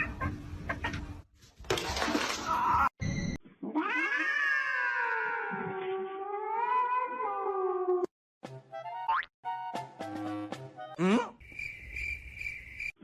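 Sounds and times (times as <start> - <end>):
cat yowling: 3.8 - 8.0.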